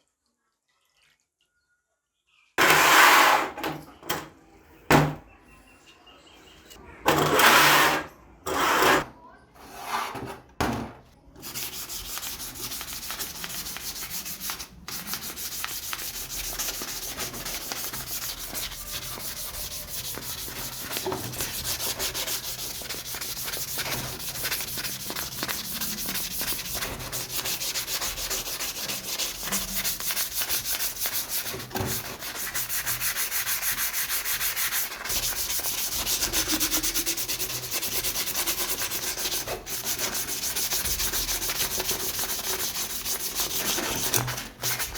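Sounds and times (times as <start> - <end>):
sanding on metal: 11.4 - 44.9.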